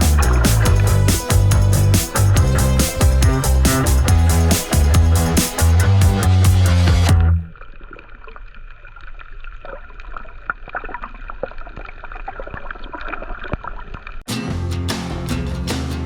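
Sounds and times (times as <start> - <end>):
background music: 0.0 - 7.5
low rumble: 0.0 - 7.6.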